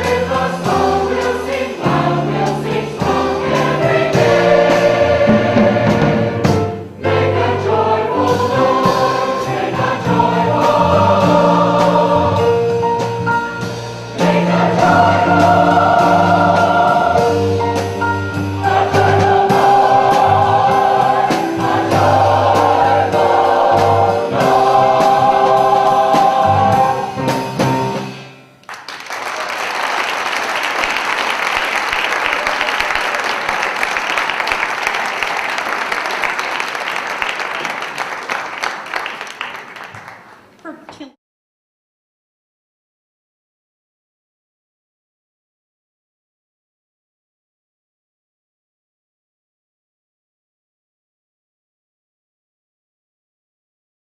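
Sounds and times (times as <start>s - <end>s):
mixed choir singing: 0.0s - 13.0s, 14.0s - 28.0s
audience applause: 28.6s - 40.5s.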